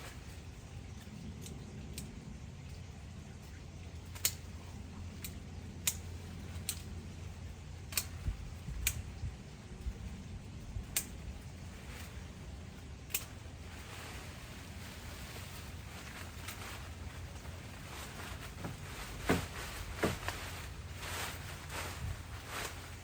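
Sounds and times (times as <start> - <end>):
pruning shears snipping branches: 4.0 - 4.5, 5.1 - 6.9, 7.8 - 9.1, 13.0 - 13.6, 15.8 - 23.0.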